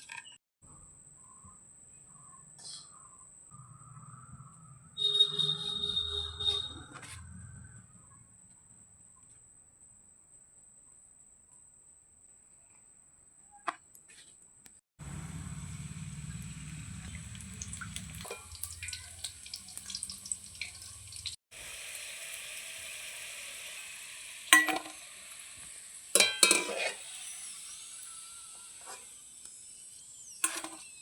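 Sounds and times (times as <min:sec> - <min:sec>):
low hum: 0:15.0 - 0:21.4
food sizzling in a pan: 0:15.0 - 0:31.0
utensil clanking against pan: 0:26.2 - 0:27.0.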